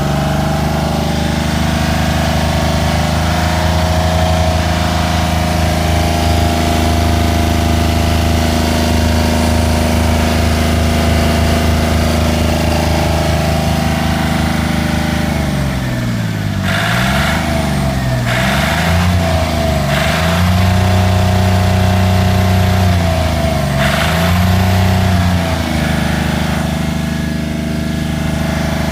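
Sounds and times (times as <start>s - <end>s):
marine diesel engine revving: 0.0s - 28.9s.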